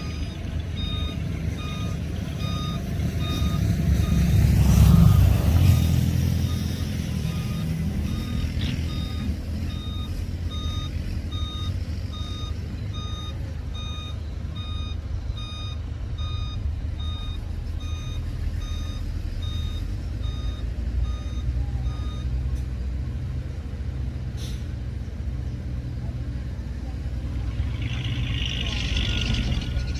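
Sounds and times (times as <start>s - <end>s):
reversing alarm beeping: 0.0s - 22.4s
low engine rumble: 0.0s - 29.9s.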